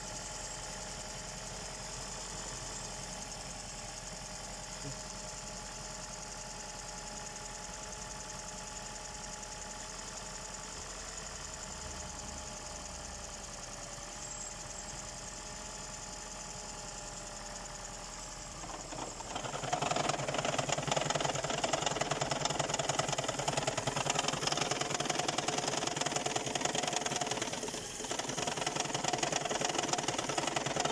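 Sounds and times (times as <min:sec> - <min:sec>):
engine running: 0:18.5 - 0:30.9
fast even engine knock: 0:18.6 - 0:30.9.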